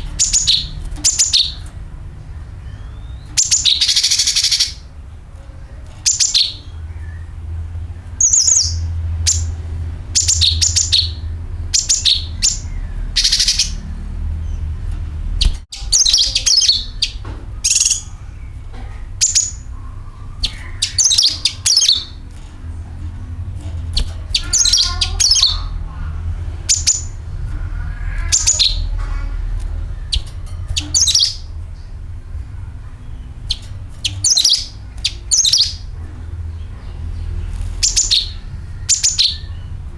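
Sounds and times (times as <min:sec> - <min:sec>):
songbird chirping and trilling: 0:00.0 - 0:39.9
steady low hum: 0:00.0 - 0:39.9.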